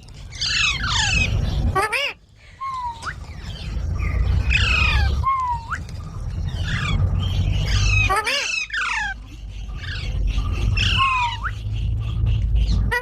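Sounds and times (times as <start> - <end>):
low rumble: 0.0 - 13.0
parrot squawking and whistling: 7.6 - 9.2, 9.8 - 11.7.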